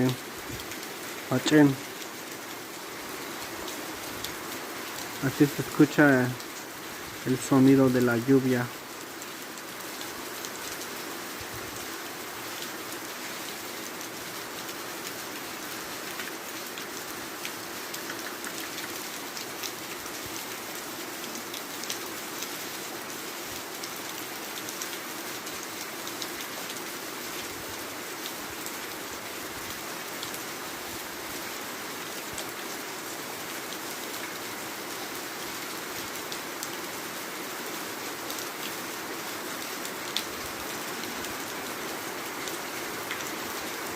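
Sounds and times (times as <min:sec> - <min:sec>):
heavy rain hissing: 0:00.0 - 0:08.8
raindrops tapping: 0:17.9 - 0:19.0.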